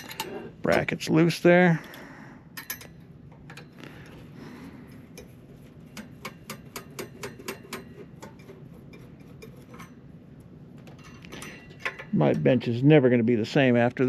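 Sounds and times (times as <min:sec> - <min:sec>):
hand tools clicking on metal: 0:02.6 - 0:03.7, 0:05.9 - 0:10.0, 0:10.9 - 0:12.7.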